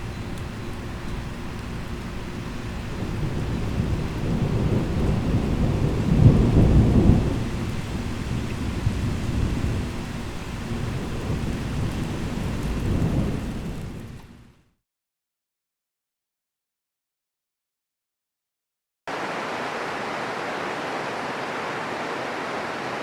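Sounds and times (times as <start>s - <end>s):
heavy rain: 0.0s - 14.5s, 19.1s - 23.0s
thunder rumbling: 2.8s - 14.1s.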